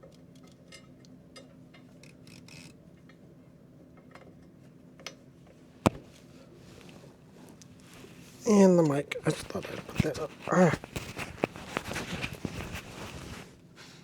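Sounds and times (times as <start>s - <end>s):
steady low hum: 5.9s - 14.0s.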